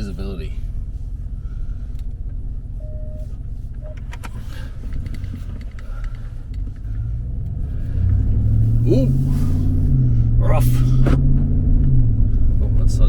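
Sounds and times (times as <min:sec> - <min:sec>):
engine and road rumble: 0:00.0 - 0:13.0
brief faint tone: 0:02.8 - 0:04.0.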